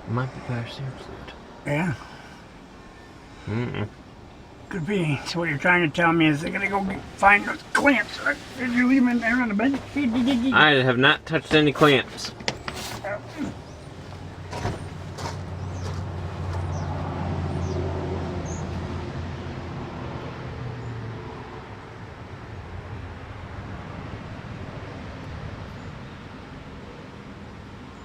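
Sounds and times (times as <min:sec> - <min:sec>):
vehicle engine humming: 0:00.0 - 0:28.0.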